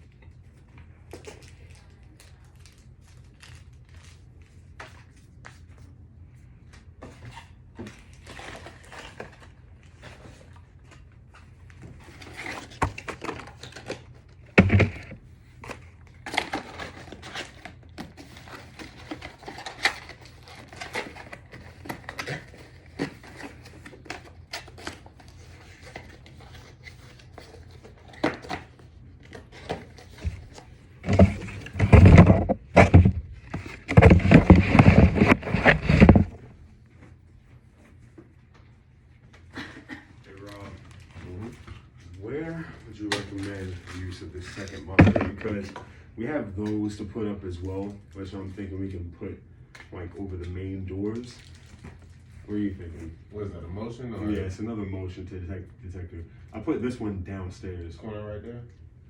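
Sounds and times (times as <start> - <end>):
packaging rustling: 12.0 - 36.6, 43.0 - 45.8.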